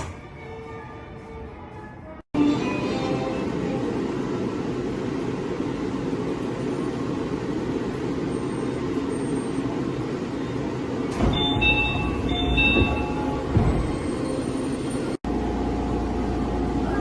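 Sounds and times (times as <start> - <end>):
train rumbling at platform: 0.0 - 17.0
two-note electronic door chime: 11.3 - 13.4.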